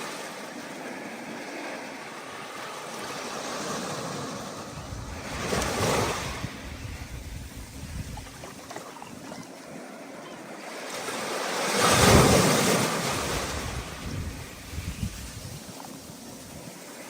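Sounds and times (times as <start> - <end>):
ocean surf: 0.0 - 17.0
wave breaking: 2.8 - 9.4.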